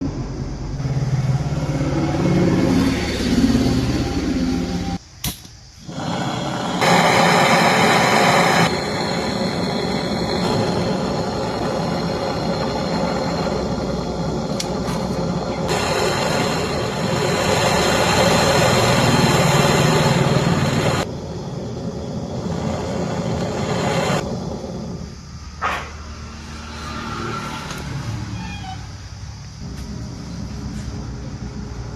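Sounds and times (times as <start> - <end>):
gas torch flame hissing: 4.5 - 27.9
torch click: 5.2 - 21.1.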